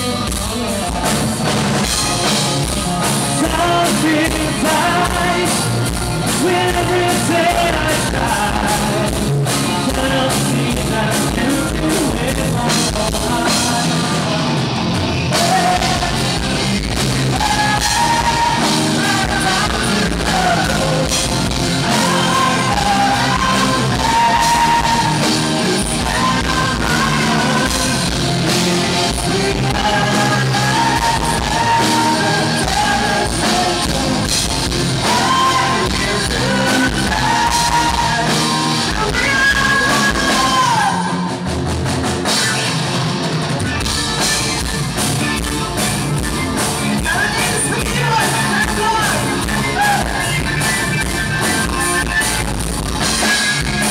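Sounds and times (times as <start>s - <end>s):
loud drums and cymbals: 0.0s - 53.9s
rock band playing live: 0.0s - 53.9s
person singing and shouting: 21.8s - 34.3s, 35.0s - 41.4s, 46.9s - 52.4s.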